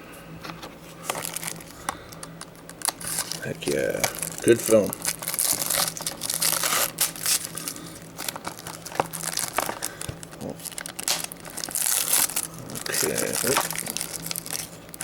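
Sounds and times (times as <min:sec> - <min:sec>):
plastic wrapping crinkling: 0:01.0 - 0:15.0.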